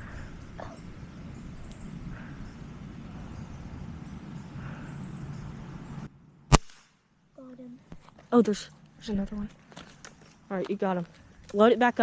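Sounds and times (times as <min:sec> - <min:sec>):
steady low rumble: 0:00.0 - 0:06.8.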